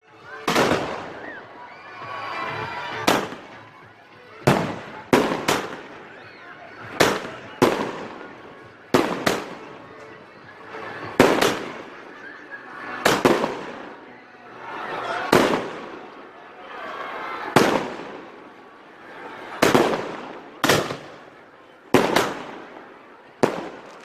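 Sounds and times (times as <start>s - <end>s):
firework bangs with crackle: 0.5s - 1.3s, 3.1s - 3.6s, 4.4s - 6.0s, 6.8s - 8.3s, 8.9s - 9.7s, 11.1s - 11.9s, 13.0s - 14.0s, 15.3s - 16.1s, 17.5s - 18.4s, 19.6s - 21.3s, 21.9s - 22.8s, 23.4s - 24.0s.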